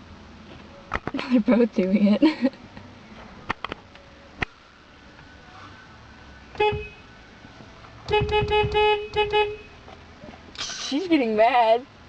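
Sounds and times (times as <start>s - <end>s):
car horn honking: 6.5s - 7.2s, 8.1s - 9.8s.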